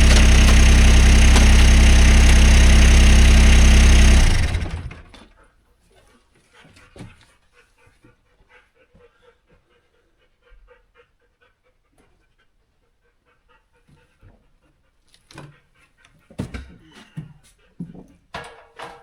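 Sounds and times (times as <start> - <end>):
thumps: 0.0 - 5.1
dog panting: 7.4 - 16.4.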